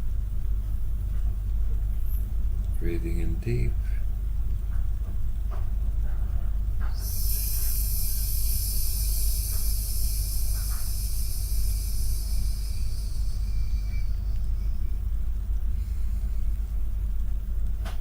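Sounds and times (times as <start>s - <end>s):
person hissing with mouth: 6.9s - 14.4s.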